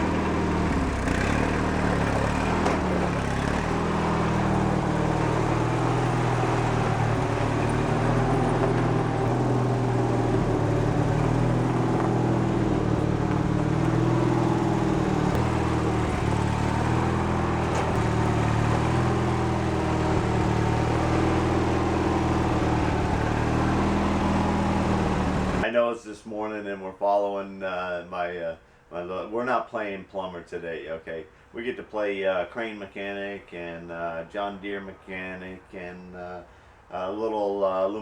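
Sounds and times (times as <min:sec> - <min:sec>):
lawn tractor engine running: 0:00.0 - 0:25.6.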